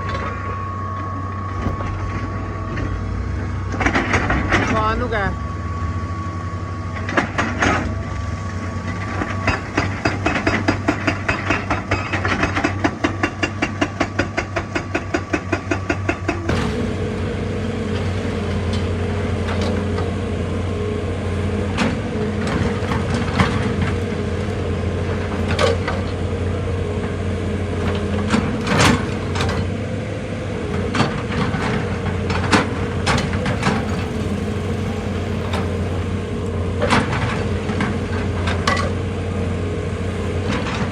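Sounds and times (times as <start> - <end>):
engine whine: 0.0 - 40.9
excavator diesel engine: 0.0 - 40.9
fast hydraulic hammering: 33.1 - 37.4.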